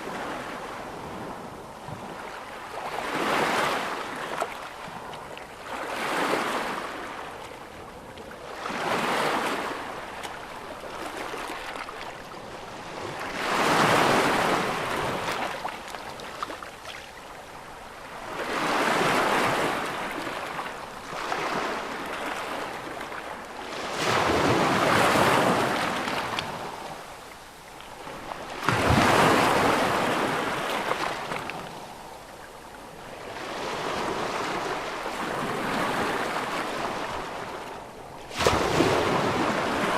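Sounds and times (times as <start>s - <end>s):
ocean waves breaking: 8.5s - 39.9s.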